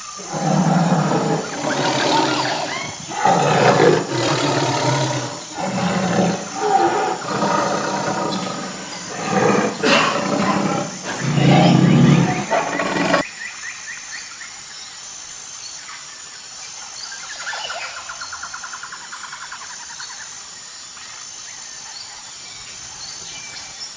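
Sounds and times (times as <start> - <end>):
faint bird or insect chirping: 0.0 - 23.9
large animal deep calls: 0.2 - 13.2.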